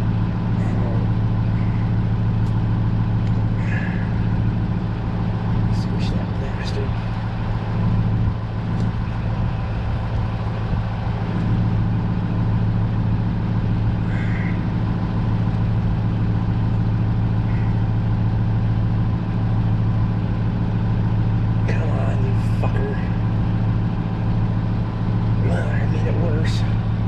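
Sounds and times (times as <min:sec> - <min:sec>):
low mechanical hum: 0:00.0 - 0:27.0.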